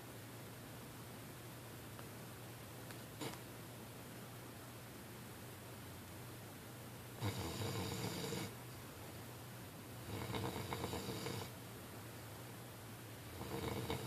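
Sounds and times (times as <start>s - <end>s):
person snoring: 13.3s - 14.0s.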